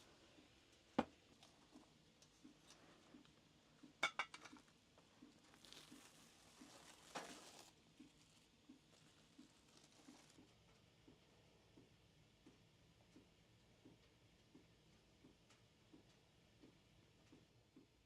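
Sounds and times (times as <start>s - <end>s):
soft rustle: 5.0s - 10.6s.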